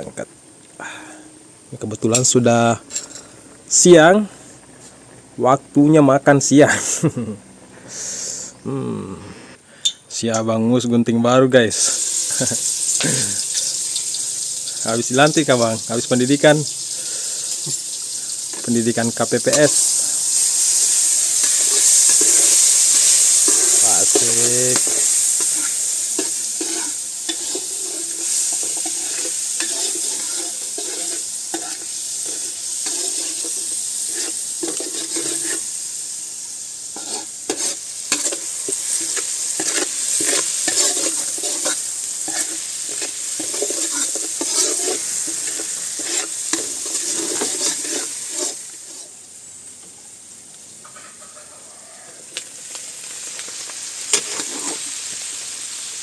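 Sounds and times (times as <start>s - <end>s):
food sizzling in a pan: 11.6s - 56.0s
spatula scraping a pan: 19.5s - 35.7s, 37.0s - 49.2s, 54.1s - 54.9s.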